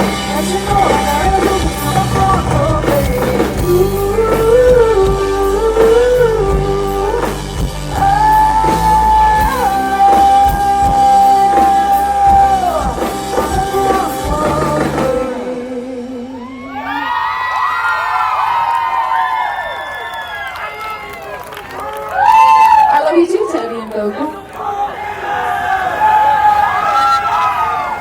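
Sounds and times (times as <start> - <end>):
bass guitar: 0.0 - 17.1
drums: 0.0 - 19.4.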